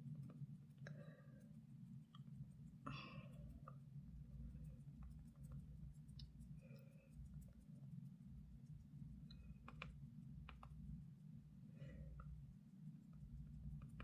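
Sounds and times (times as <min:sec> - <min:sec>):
low room hum: 0:00.0 - 0:14.0
faint small clicks: 0:09.2 - 0:10.8.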